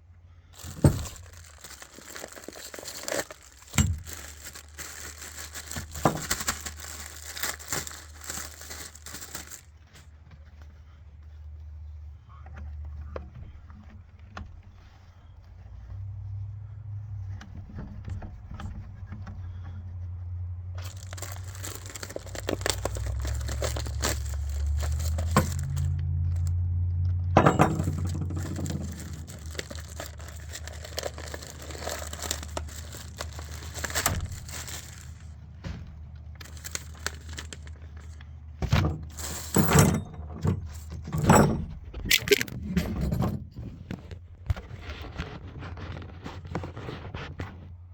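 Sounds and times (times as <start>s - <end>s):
crinkling plastic and cardboard: 0.4s - 11.4s, 20.8s - 26.6s, 27.3s - 43.1s, 43.7s - 47.7s
knocks and clinks: 27.4s - 33.0s, 39.0s - 43.4s.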